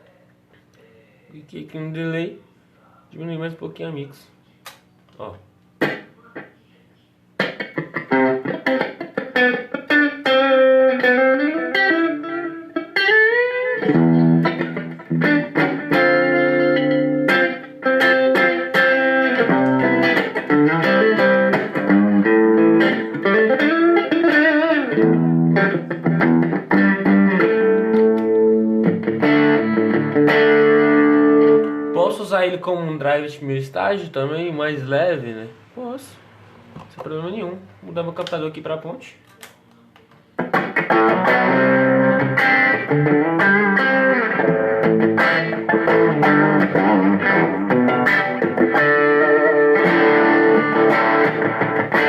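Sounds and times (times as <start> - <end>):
electric guitar with delay: 7.4 - 32.0, 40.4 - 52.0.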